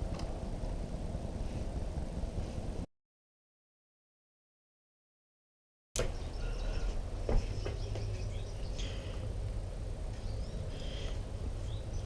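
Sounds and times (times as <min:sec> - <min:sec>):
low background rumble: 0:00.0 - 0:02.9, 0:06.1 - 0:12.0
faint bird chirps: 0:06.0 - 0:09.3.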